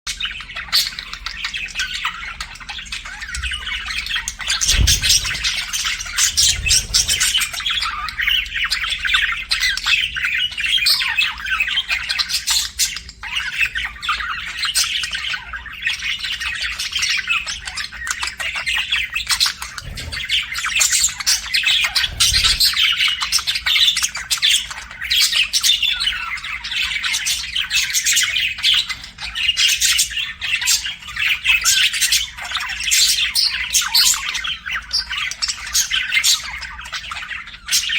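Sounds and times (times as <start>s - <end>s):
budgies chirping: 0.1s - 37.9s
dull low thumps: 4.6s - 7.8s.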